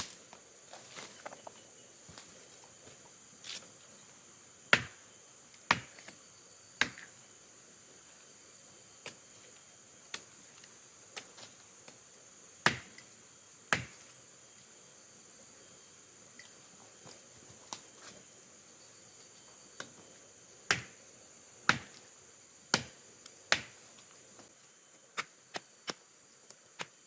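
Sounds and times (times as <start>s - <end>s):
high insect drone: 0.0s - 27.0s
blade chopping into tree bark: 4.8s - 5.0s, 12.7s - 13.0s, 13.7s - 14.0s, 20.7s - 21.0s, 21.7s - 22.0s.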